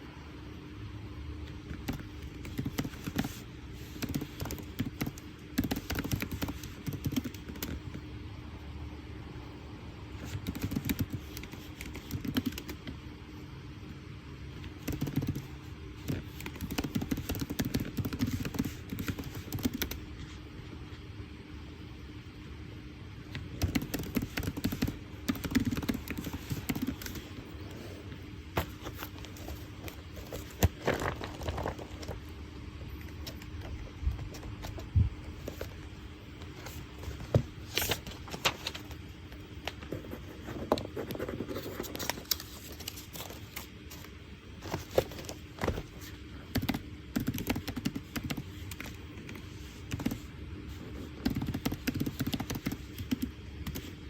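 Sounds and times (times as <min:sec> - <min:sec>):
faint steady hum: 0:00.0 - 0:54.0.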